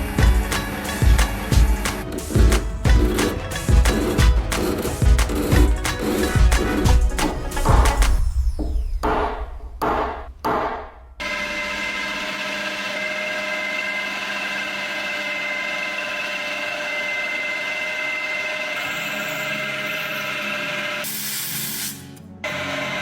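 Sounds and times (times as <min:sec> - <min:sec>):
burst of harsh hiss: 0:21.0 - 0:22.2.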